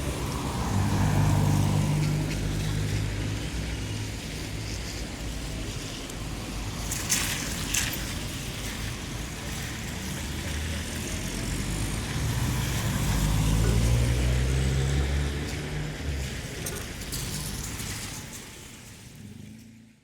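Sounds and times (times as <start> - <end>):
vehicle approaching: 0.0 - 5.6, 9.7 - 20.0
tyres hissing on wet pavement: 0.0 - 19.8
traffic engines running: 0.0 - 20.0.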